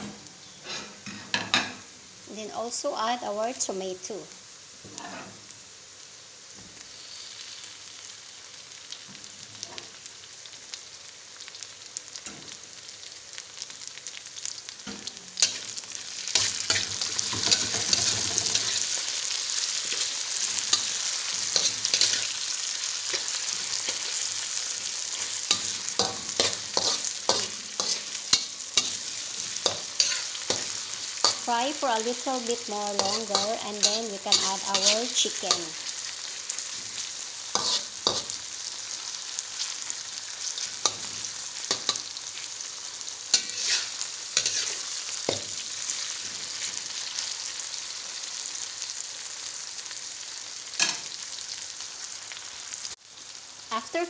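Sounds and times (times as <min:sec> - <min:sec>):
food sizzling in a pan: 0:00.0 - 0:54.0.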